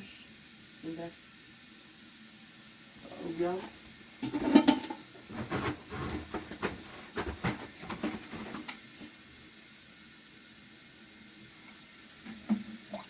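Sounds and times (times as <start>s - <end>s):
faint hiss: 0.0s - 13.0s
objects being handled: 4.2s - 9.1s.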